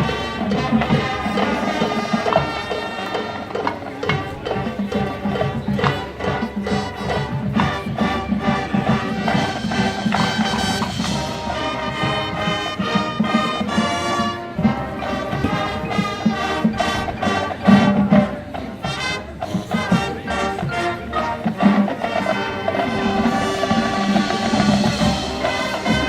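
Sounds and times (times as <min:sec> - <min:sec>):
marching band playing: 0:00.0 - 0:26.0
steady drum beat: 0:00.0 - 0:26.0.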